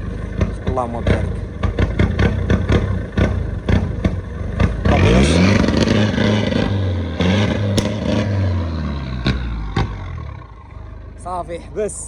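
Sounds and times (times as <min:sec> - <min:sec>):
diesel engine revving: 0:00.0 - 0:11.6.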